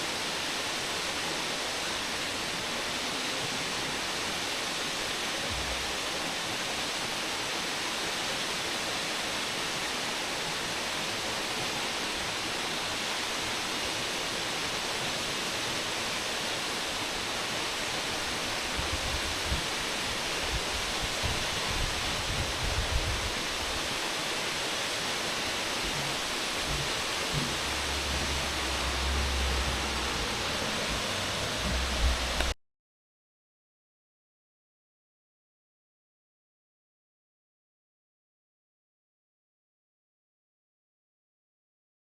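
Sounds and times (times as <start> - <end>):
waterfall rushing: 0.0 - 32.6.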